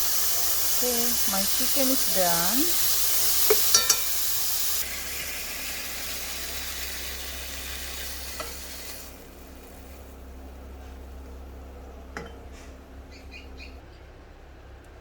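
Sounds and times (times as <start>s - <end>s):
chicken sizzling in a pan: 0.0s - 11.5s.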